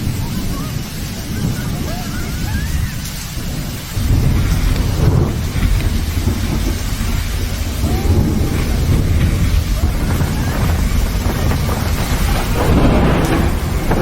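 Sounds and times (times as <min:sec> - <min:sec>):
heavy rain: 0:00.0 - 0:14.0
deep low rumble: 0:03.9 - 0:14.0.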